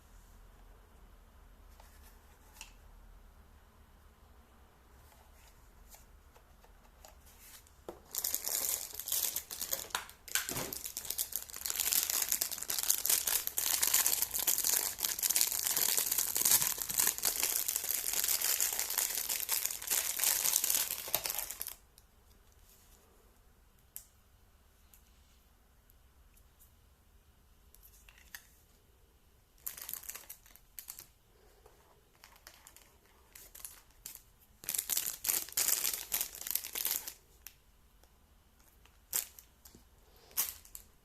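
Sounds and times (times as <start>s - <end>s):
packaging crinkling and tearing: 8.0s - 21.8s, 32.2s - 37.2s.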